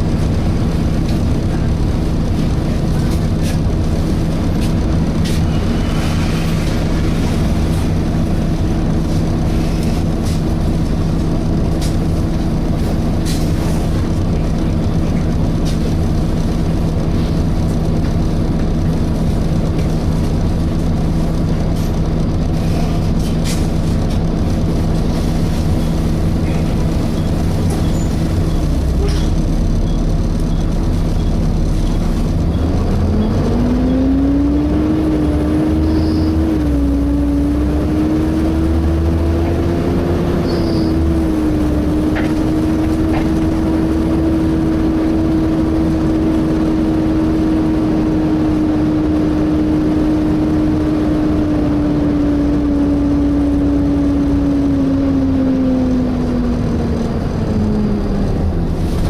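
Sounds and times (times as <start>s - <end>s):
engine and road rumble: 0.0s - 59.0s
engine cooling fan whine: 0.0s - 59.0s.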